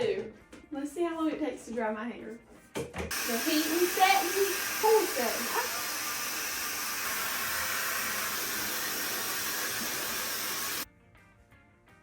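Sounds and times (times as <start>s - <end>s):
hair dryer blowing: 3.1s - 10.9s.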